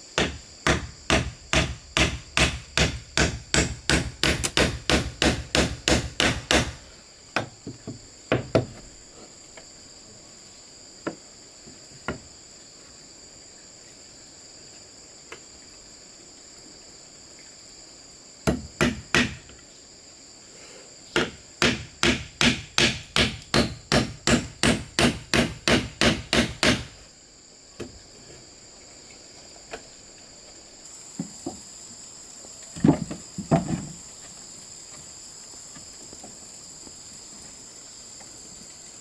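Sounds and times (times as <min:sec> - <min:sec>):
crickets trilling: 0:00.0 - 0:39.0
hand tool striking bamboo: 0:00.2 - 0:06.8, 0:18.5 - 0:19.5, 0:21.2 - 0:27.0.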